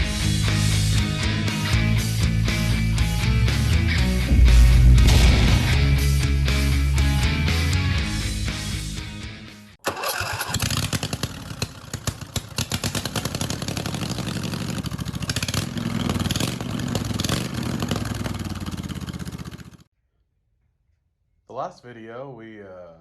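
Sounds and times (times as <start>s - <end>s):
small engine running: 9.8s - 19.9s.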